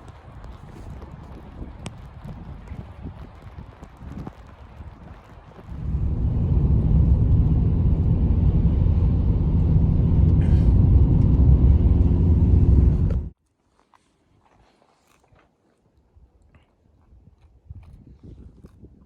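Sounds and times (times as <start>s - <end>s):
wind buffeting microphone: 0.0s - 13.3s, 17.1s - 19.0s.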